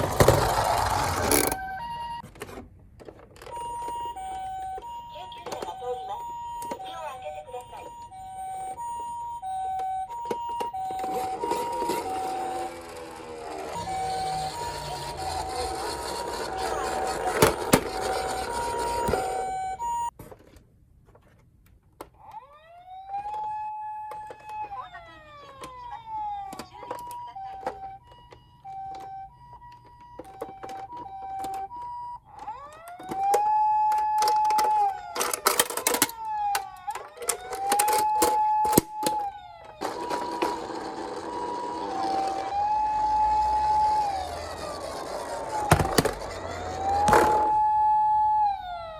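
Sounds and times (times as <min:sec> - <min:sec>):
rolling rattle: 0:00.0 - 0:01.6, 0:39.8 - 0:47.6
toy two-tone siren: 0:00.0 - 0:02.2, 0:03.4 - 0:20.2, 0:22.2 - 0:48.9
toy wail siren: 0:00.1 - 0:02.2, 0:03.4 - 0:20.1, 0:22.2 - 0:48.9.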